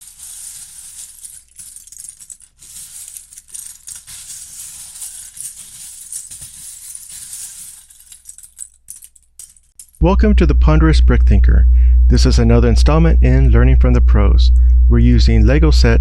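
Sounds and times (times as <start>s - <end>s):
plastic pieces rattling: 0.0s - 10.0s.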